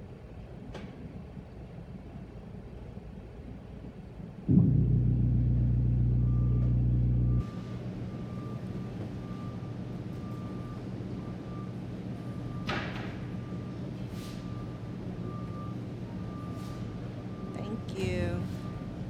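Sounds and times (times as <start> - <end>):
drain pump humming: 4.5 - 7.4.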